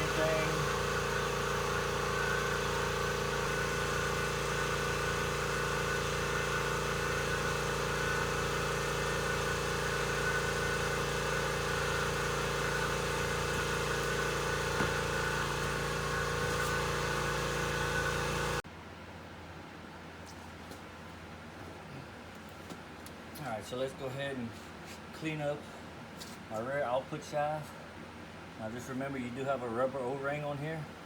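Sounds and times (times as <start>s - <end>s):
motor hum: 0.0s - 18.6s.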